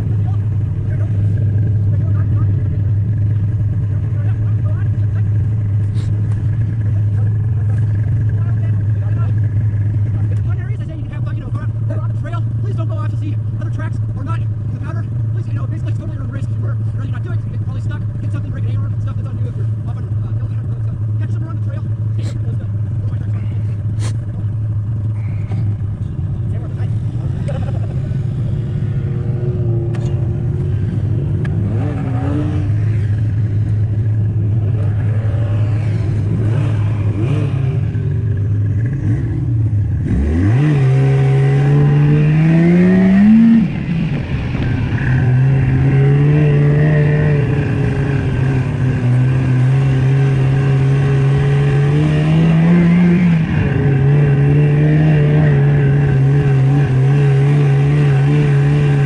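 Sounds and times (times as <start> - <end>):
snowmobile engine revving: 23.8 - 59.0.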